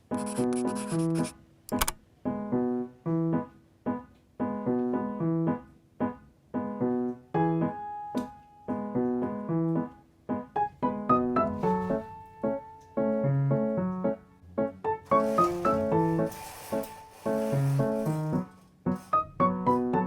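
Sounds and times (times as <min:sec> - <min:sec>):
light piano tune: 0:00.0 - 0:20.0
sharp click: 0:00.1 - 0:02.0.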